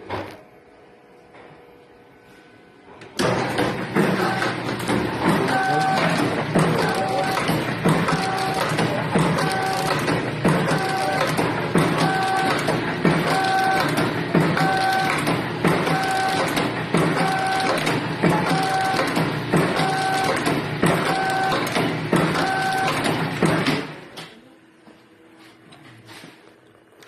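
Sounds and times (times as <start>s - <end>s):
packing machine clattering: 3.2s - 24.0s.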